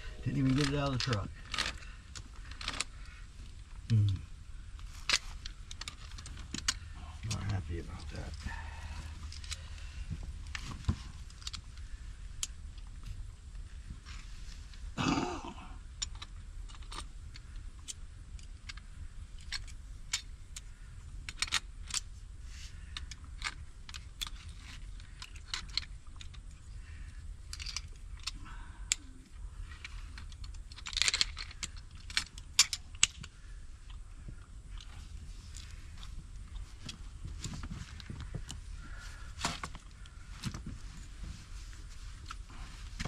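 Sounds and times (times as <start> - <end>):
low steady rumble: 0.0 - 43.0
small clicks and clinks: 16.0 - 22.1, 22.9 - 34.0.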